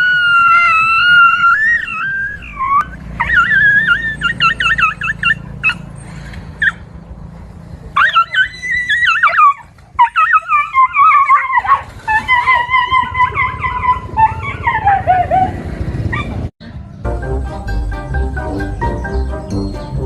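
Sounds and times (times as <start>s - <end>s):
dogs whining and yelping: 0.0s - 6.8s, 8.0s - 16.5s.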